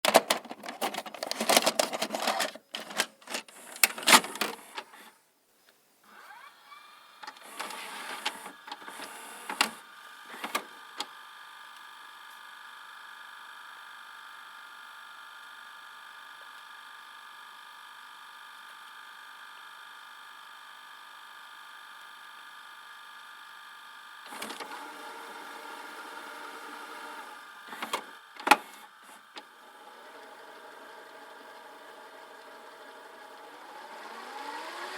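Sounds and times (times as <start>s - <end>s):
tape mechanism clicks and clunks: 0.0s - 5.1s, 7.2s - 11.1s, 27.6s - 29.5s
motors whirring: 6.1s - 11.1s.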